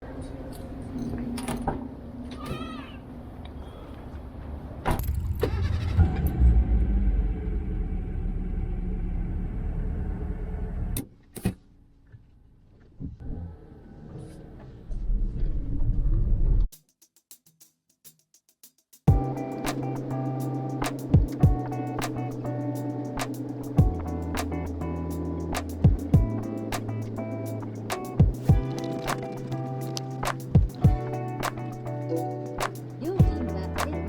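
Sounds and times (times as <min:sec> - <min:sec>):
car engine rumbling: 0:04.6 - 0:11.0, 0:19.1 - 0:34.0.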